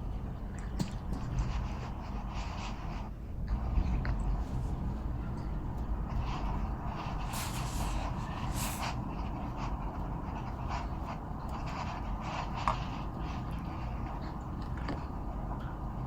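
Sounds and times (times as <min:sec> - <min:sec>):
cat sniffing: 0:00.5 - 0:15.2
low rumble: 0:03.4 - 0:09.8.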